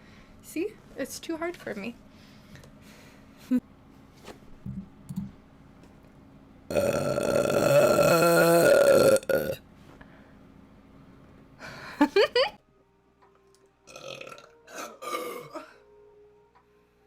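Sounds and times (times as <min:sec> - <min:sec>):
person burping: 0:06.7 - 0:09.6, 0:13.9 - 0:15.7.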